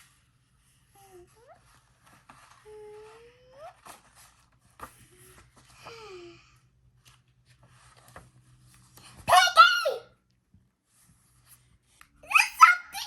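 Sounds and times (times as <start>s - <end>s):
child breathy sigh: 5.8s - 6.6s.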